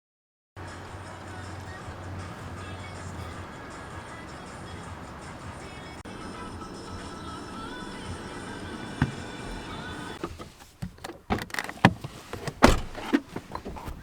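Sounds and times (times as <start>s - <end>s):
background music: 0.6s - 10.2s.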